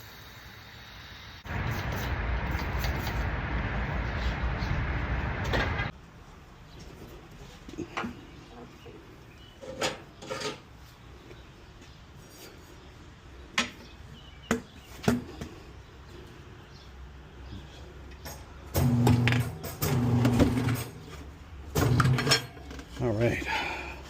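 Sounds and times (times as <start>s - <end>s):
quiet rubbing and shuffling: 1.6s - 9.3s
metal tools clinking: 21.8s - 22.9s.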